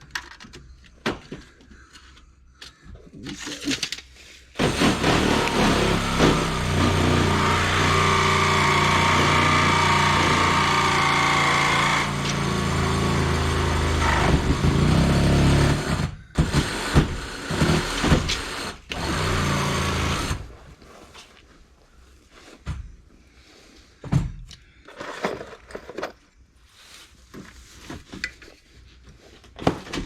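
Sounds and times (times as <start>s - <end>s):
power tool electric motor running: 4.6s - 20.5s.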